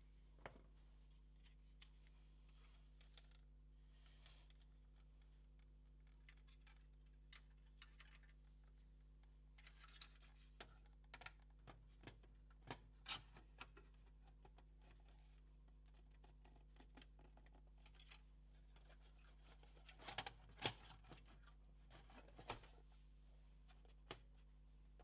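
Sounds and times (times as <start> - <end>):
low electrical hum: 0.0 - 25.0.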